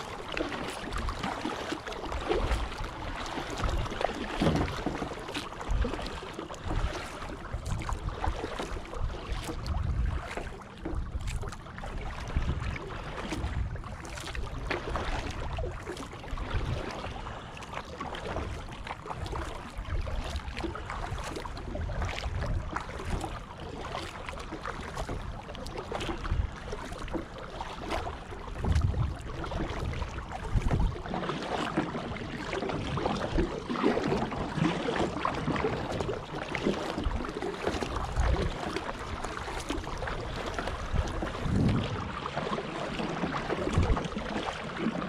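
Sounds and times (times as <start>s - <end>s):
water sloshing around kayak: 0.0s - 45.0s
wind rumbling on microphone: 2.2s - 17.4s, 18.2s - 23.5s, 28.3s - 31.3s, 32.1s - 45.0s.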